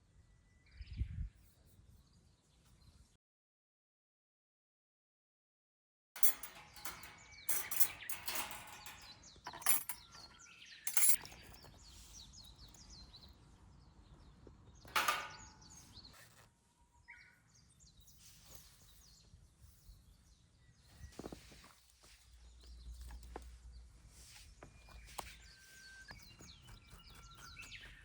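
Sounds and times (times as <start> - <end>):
knocks and clinks in metal fire pit: 6.2 - 11.9, 14.7 - 16.0
faint birds chirping: 6.2 - 28.0.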